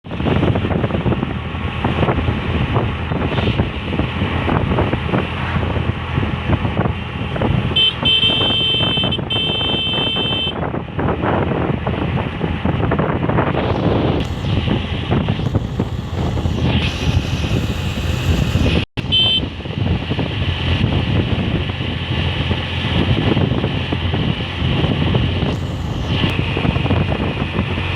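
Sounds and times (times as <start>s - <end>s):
traffic rumble: 0.1s - 27.9s
high-pitched vehicle horn: 7.7s - 10.6s, 18.4s - 19.5s
wind buffeting microphone: 10.5s - 27.9s.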